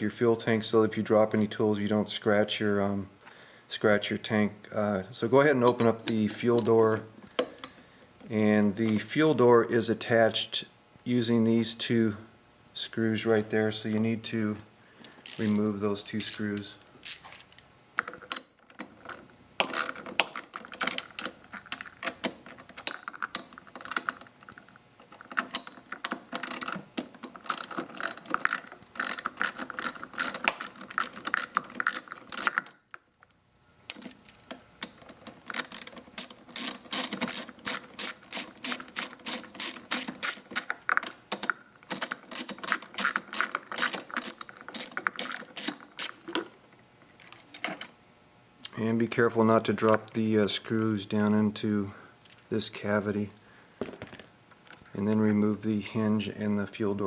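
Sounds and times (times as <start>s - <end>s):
ratcheting hand tool clicking: 15.2s - 18.4s, 25.3s - 32.8s, 34.8s - 46.3s.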